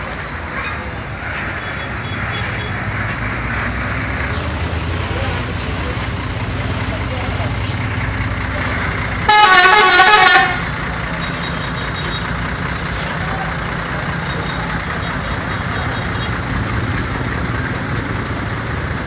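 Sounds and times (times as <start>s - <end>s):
engine hum: 0.0s - 19.0s
musical air horn: 9.3s - 10.7s.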